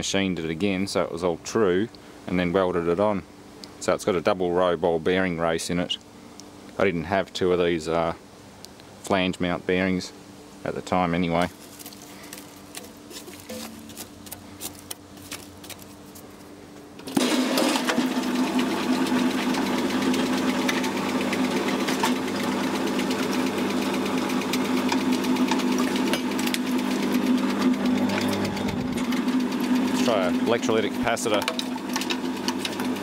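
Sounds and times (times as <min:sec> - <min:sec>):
faint hum: 0:00.0 - 0:17.1
shredder motor humming and rattling: 0:17.0 - 0:33.0.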